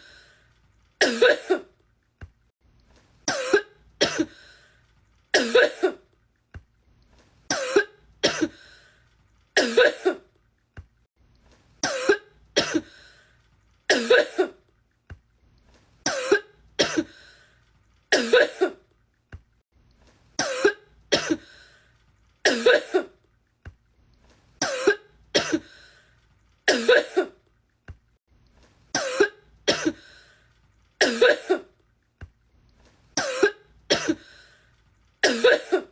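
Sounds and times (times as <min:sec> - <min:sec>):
woman coughing: 0:01.0 - 0:01.8, 0:03.3 - 0:04.4, 0:05.4 - 0:06.0, 0:07.5 - 0:08.6, 0:09.6 - 0:10.3, 0:11.8 - 0:12.9, 0:13.9 - 0:14.6, 0:16.1 - 0:17.2, 0:18.1 - 0:18.8, 0:20.4 - 0:21.5, 0:22.5 - 0:23.2, 0:24.6 - 0:25.7, 0:26.7 - 0:27.4, 0:29.0 - 0:30.0, 0:31.0 - 0:31.7, 0:33.2 - 0:34.3, 0:35.2 - 0:35.9.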